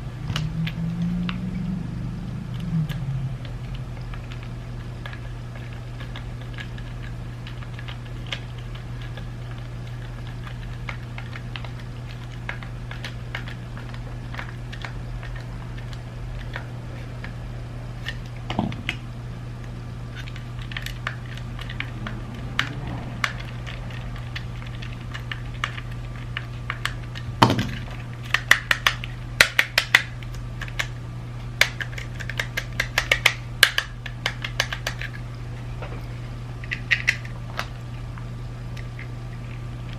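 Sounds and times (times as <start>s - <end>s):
steady low hum: 0.0s - 39.9s
plastic parts clicking: 31.6s - 35.2s, 36.6s - 37.7s.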